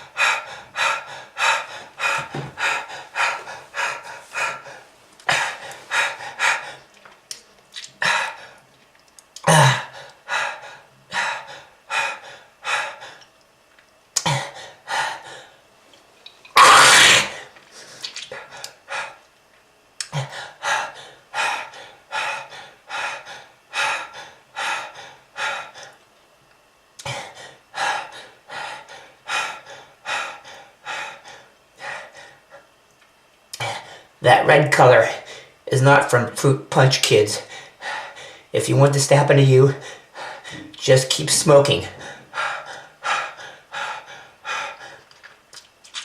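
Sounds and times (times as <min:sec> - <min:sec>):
person hacking cough: 0:09.4 - 0:09.9.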